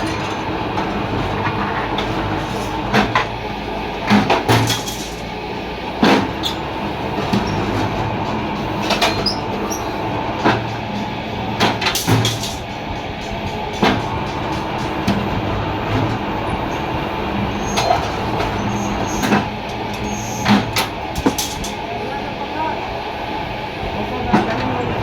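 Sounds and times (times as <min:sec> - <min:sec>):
metal clanks and scrapes: 0:04.1 - 0:05.3.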